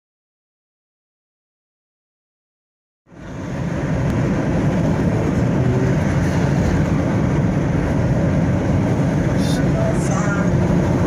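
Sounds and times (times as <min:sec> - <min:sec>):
car road and engine noise: 0:03.1 - 0:11.0.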